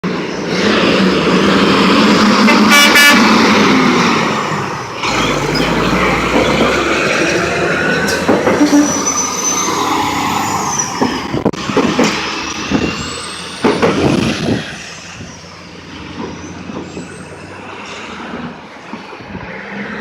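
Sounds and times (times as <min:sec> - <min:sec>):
road and engine noise: 0:00.0 - 0:20.0
truck horn blast: 0:02.4 - 0:03.4, 0:08.5 - 0:09.1.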